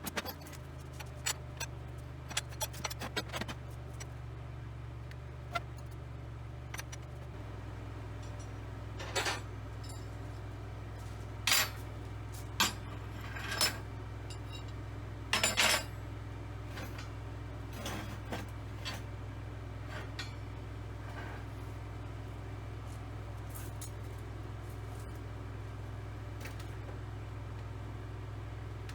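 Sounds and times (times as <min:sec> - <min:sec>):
scrap metal clanking: 0:00.0 - 0:03.6.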